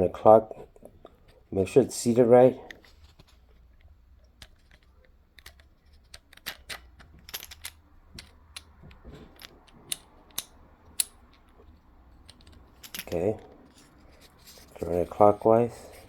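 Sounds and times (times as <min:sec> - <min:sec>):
light metal scrapes: 0:11.2 - 0:16.0.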